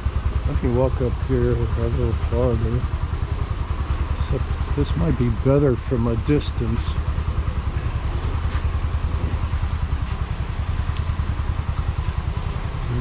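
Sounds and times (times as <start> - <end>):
construction machinery engine throbbing: 0.0 - 13.0.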